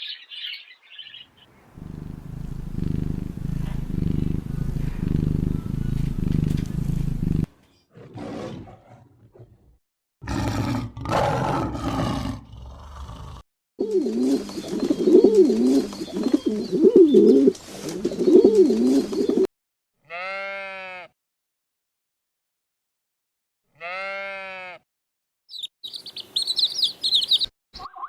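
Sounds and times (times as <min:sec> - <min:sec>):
rough roar-like animal calls: 0:01.8 - 0:07.2, 0:10.2 - 0:13.4.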